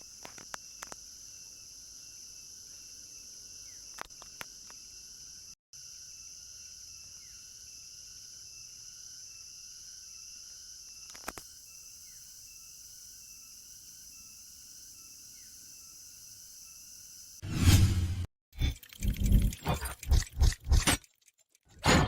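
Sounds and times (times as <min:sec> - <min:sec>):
insects chorus: 0:00.0 - 0:17.4.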